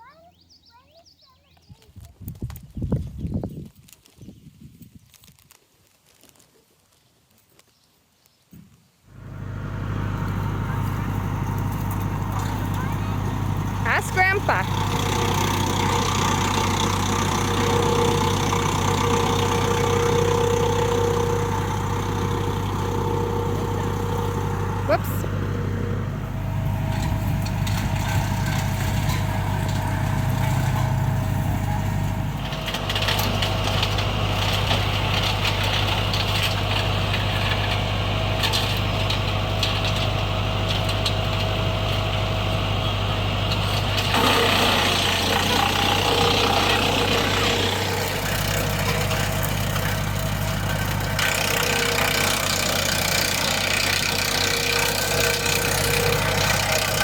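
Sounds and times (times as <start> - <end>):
wood chipper engine hum: 9.1 - 57.0
chipping and grinding: 10.2 - 25.0, 26.4 - 42.2, 43.5 - 57.0.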